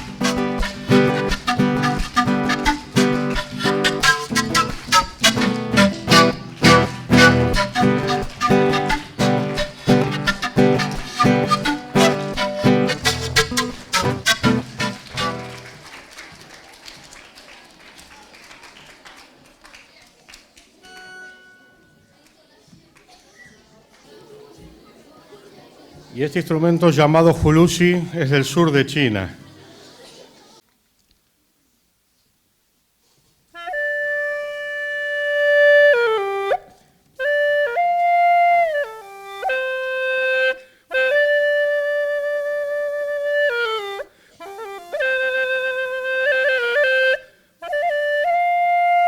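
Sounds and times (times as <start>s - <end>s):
gourd flute playing slow melody: 0.0s - 15.8s, 33.6s - 49.0s
held musical note: 0.0s - 15.8s
audience applause: 15.0s - 20.8s.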